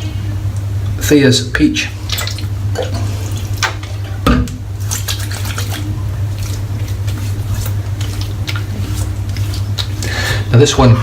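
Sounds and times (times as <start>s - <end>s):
water splashes: 1.8s - 10.4s.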